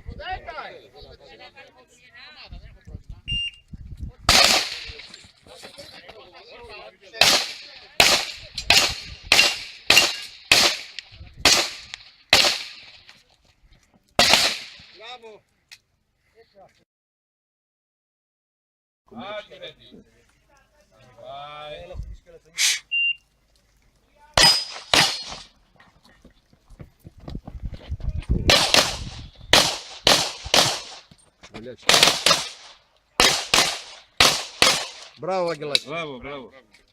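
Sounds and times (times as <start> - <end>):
handgun shots: 4.3 - 5.1, 7.2 - 12.9, 14.2 - 14.9, 24.4 - 25.5, 28.5 - 31.0, 31.9 - 35.1
knocks and rustles of movement: 25.2 - 29.5, 30.9 - 31.9.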